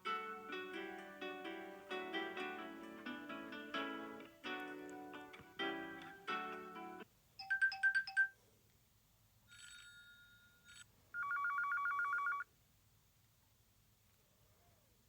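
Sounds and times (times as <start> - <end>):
phone ringtone: 7.4 - 8.4, 9.5 - 12.4
fast trilling phone ring: 9.5 - 12.4
short phone beeps: 11.2 - 12.5.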